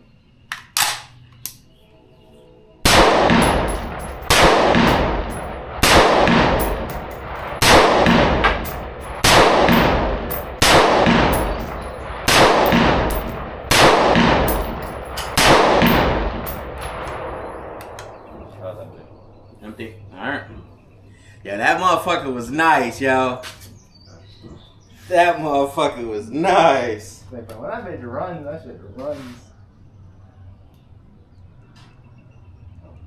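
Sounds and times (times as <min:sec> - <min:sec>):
rifle shots echoing: 0:02.8 - 0:19.4.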